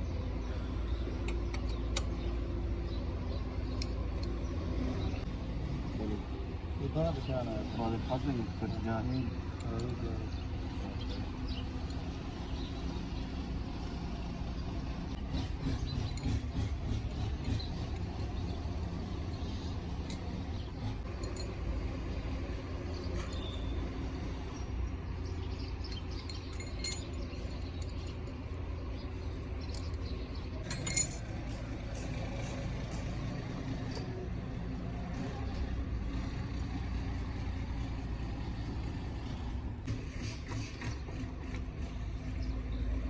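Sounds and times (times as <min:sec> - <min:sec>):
metallic clinks of hand tools: 0:25.8 - 0:28.3, 0:29.6 - 0:32.2.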